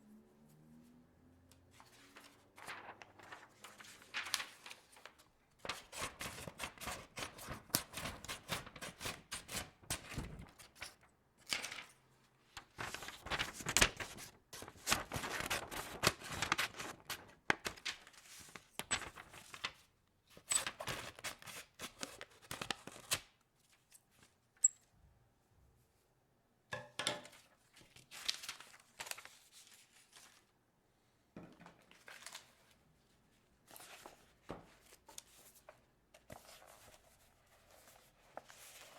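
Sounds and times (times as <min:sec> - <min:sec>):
paper tearing and crinkling: 0:02.6 - 0:05.1, 0:12.8 - 0:17.2.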